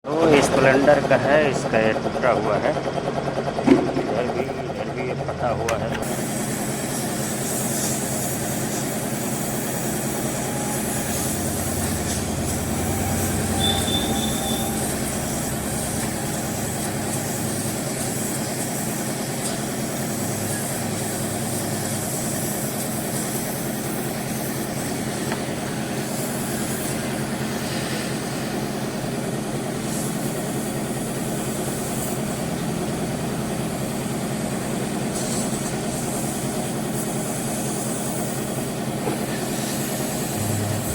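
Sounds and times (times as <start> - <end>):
machine running with low hum: 0.1 - 22.8, 30.4 - 36.8, 38.7 - 40.9.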